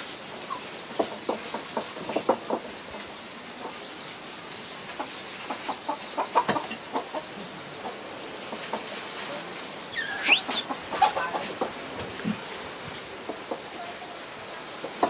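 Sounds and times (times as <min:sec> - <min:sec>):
shrill rising animal call: 0:09.9 - 0:10.7
short clucking animal calls: 0:09.9 - 0:10.8.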